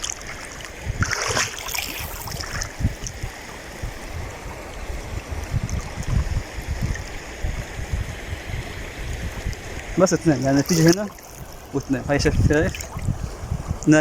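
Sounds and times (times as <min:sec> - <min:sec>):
water sloshing and splashing: 0:00.0 - 0:07.8, 0:09.0 - 0:14.0
low buffeting thumps: 0:11.4 - 0:14.0.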